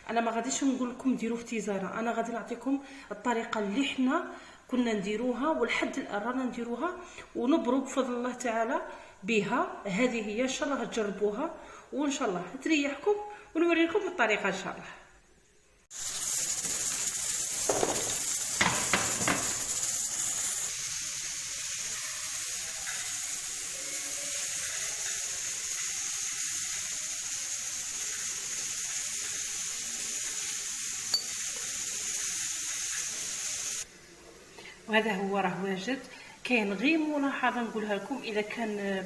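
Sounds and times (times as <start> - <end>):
water boiling in a pot: 15.8 - 39.0.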